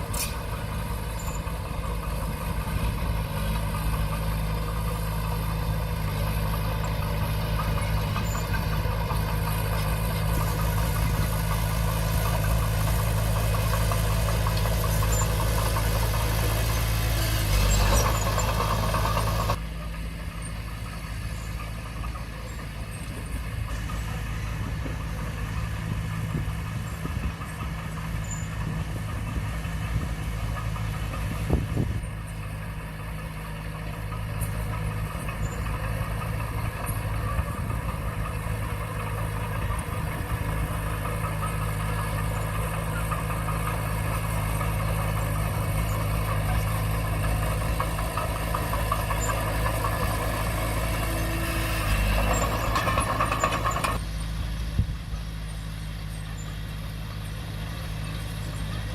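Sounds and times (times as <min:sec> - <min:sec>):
bulldozer diesel engine running: 0:00.0 - 0:58.9.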